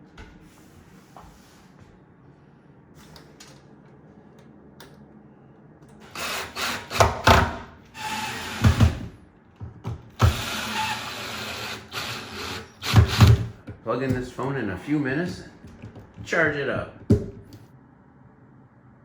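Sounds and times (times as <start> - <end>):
power drill running: 6.0 - 9.0, 10.2 - 13.4.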